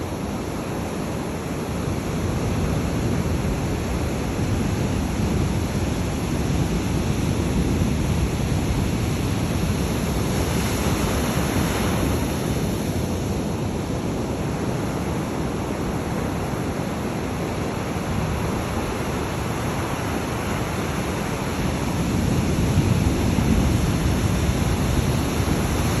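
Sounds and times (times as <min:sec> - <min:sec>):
waves breaking on beach: 0:00.0 - 0:26.0.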